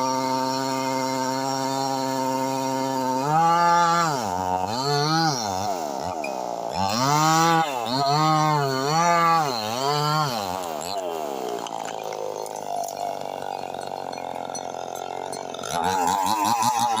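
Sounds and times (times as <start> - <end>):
chainsaw engine revving: 0.0 - 17.0.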